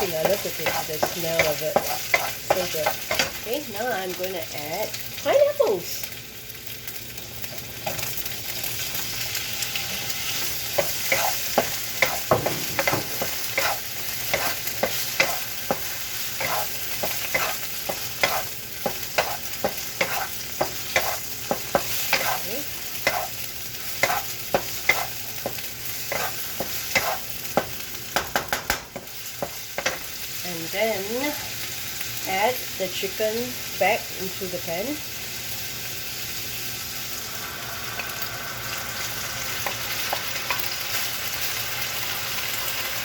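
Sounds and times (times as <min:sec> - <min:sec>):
spatula scraping a pan: 0:00.0 - 0:03.4, 0:09.9 - 0:27.7
food sizzling in oil: 0:00.0 - 0:43.0.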